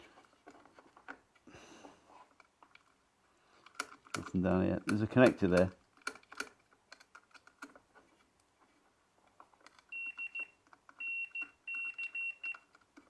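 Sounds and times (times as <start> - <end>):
multimeter buzzer beeping: 9.9 - 12.7.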